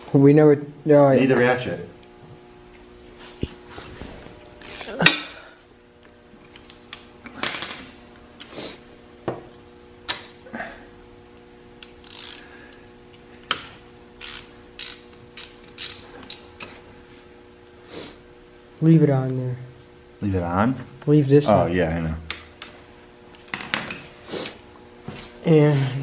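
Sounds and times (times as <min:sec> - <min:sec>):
steady hum: 0:00.0 - 0:26.0
ratchet wrench clicking: 0:04.6 - 0:04.9, 0:11.8 - 0:12.5, 0:14.2 - 0:16.4
metal parts clinking and scraping: 0:04.6 - 0:05.0.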